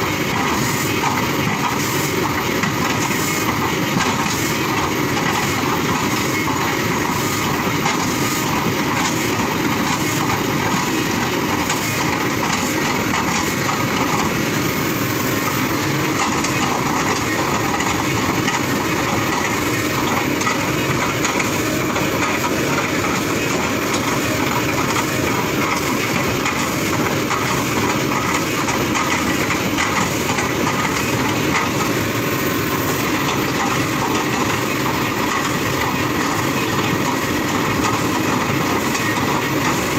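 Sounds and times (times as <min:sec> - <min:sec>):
excavator engine and hydraulics: 0:00.0 - 0:39.9
rapid clatter: 0:15.4 - 0:39.9.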